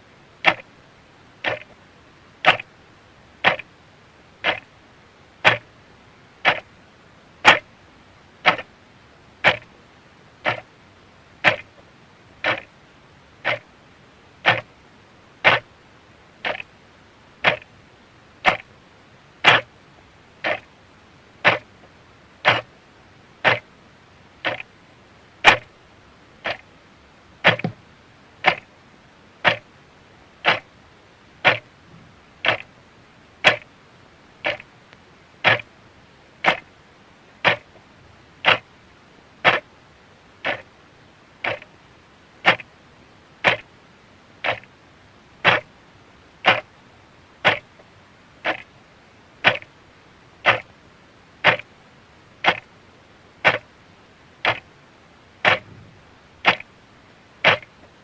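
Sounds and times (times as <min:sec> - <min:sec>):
clock ticking: 0:00.4 - 0:00.6, 0:01.4 - 0:01.7, 0:02.4 - 0:02.6, 0:03.4 - 0:03.6, 0:04.4 - 0:04.6, 0:05.4 - 0:05.6, 0:06.4 - 0:06.7, 0:07.4 - 0:07.6, 0:08.4 - 0:08.7, 0:09.4 - 0:09.7, 0:10.4 - 0:10.7, 0:11.4 - 0:11.7, 0:12.4 - 0:12.7, 0:13.4 - 0:13.6, 0:14.4 - 0:14.7, 0:15.4 - 0:15.7, 0:16.4 - 0:16.7, 0:17.4 - 0:17.7, 0:18.4 - 0:18.7, 0:19.4 - 0:19.7, 0:20.4 - 0:20.6, 0:21.4 - 0:21.7, 0:22.4 - 0:22.7, 0:23.4 - 0:23.6, 0:24.4 - 0:24.6, 0:25.4 - 0:25.7, 0:26.4 - 0:26.6, 0:27.4 - 0:27.8, 0:28.4 - 0:28.7, 0:29.4 - 0:29.6, 0:30.4 - 0:30.7, 0:31.4 - 0:31.6, 0:32.4 - 0:32.7, 0:33.4 - 0:33.7, 0:34.4 - 0:34.7, 0:35.4 - 0:35.7, 0:36.4 - 0:36.6, 0:37.4 - 0:37.7, 0:38.4 - 0:38.6, 0:39.4 - 0:39.6, 0:40.4 - 0:40.6, 0:41.4 - 0:41.7, 0:42.4 - 0:42.7, 0:43.4 - 0:43.6, 0:44.4 - 0:44.7, 0:45.4 - 0:45.7, 0:46.5 - 0:46.7, 0:47.4 - 0:47.7, 0:48.4 - 0:48.6, 0:49.4 - 0:49.7, 0:50.4 - 0:50.7, 0:51.4 - 0:51.7, 0:52.4 - 0:52.6, 0:53.4 - 0:53.6, 0:54.4 - 0:54.6, 0:55.4 - 0:55.8, 0:56.4 - 0:56.6, 0:57.4 - 0:57.7.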